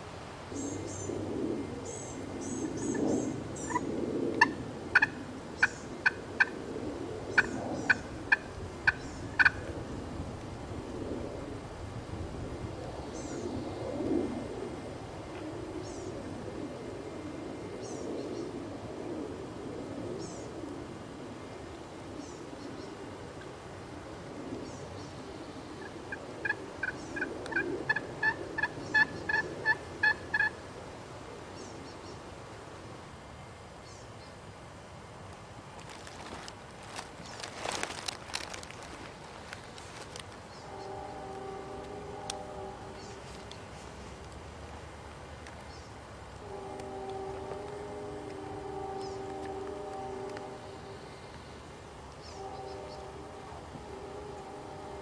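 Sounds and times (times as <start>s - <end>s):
turkey clucking: 4.4s - 6.5s, 7.4s - 9.7s, 25.8s - 30.5s
songbirds chirping faintly: 35.3s - 55.0s.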